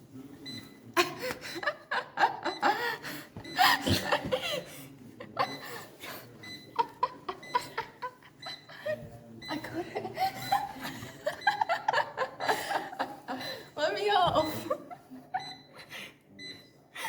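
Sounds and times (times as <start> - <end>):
people laughing hard: 1.0 - 16.2.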